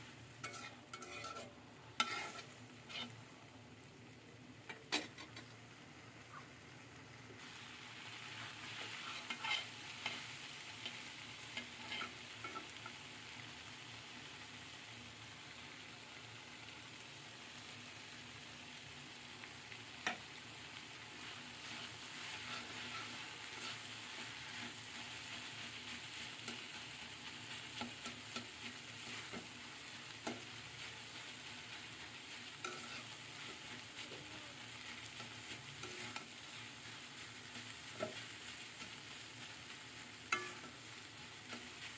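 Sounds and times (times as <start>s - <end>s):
food sizzling in hot oil: 0.0s - 41.9s
spatula scraping a pan: 0.4s - 3.3s, 8.2s - 13.0s, 21.0s - 41.9s.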